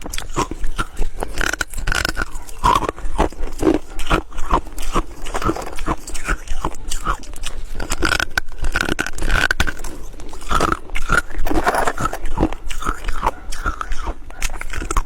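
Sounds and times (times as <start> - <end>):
ice crunching while chewed: 0.0 - 15.0
squeaky mouth sounds: 0.0 - 15.0.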